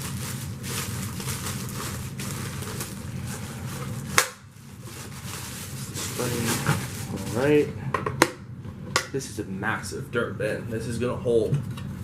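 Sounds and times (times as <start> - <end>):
plastic packaging rustling: 0.0 - 7.7.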